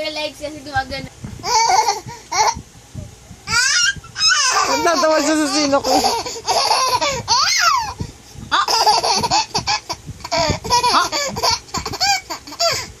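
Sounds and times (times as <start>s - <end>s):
baby laughing: 1.4s - 2.6s, 3.5s - 8.0s, 8.6s - 12.9s.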